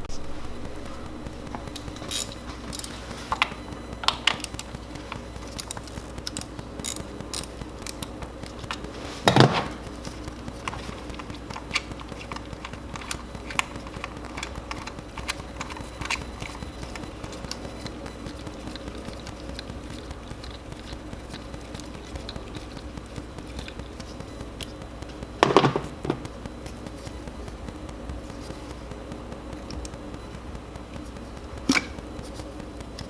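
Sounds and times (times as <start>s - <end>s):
hand tools clicking and clinking: 1.5s - 4.6s.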